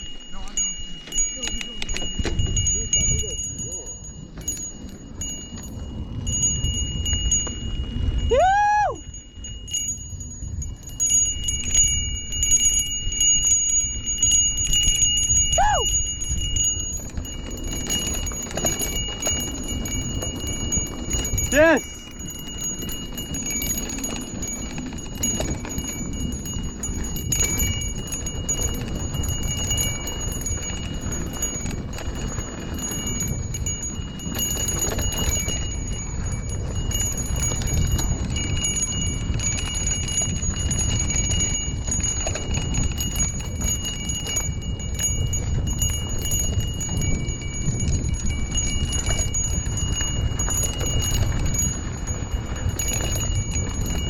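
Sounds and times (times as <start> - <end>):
bell ringing and rattling: 0.0 - 54.0.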